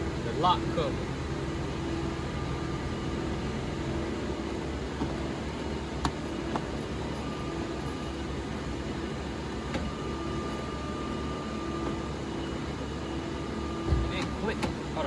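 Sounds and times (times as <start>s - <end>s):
shop machines humming: 0.0s - 15.0s.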